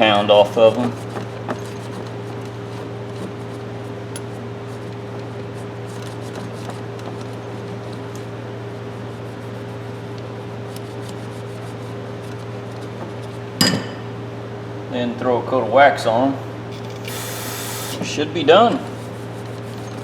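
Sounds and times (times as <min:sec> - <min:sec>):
electric motor hum: 0:16.4 - 0:18.2.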